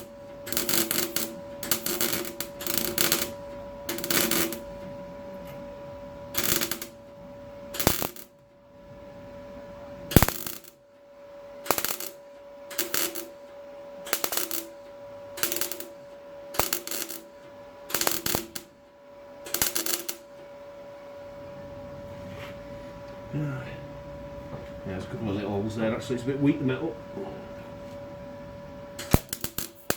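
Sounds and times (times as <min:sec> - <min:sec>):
welder crackling bursts: 0:00.0 - 0:04.7, 0:06.3 - 0:07.0, 0:07.7 - 0:08.3, 0:10.1 - 0:10.8, 0:11.6 - 0:18.8, 0:19.4 - 0:20.3, 0:29.0 - 0:29.9
steady hum: 0:00.0 - 0:29.9.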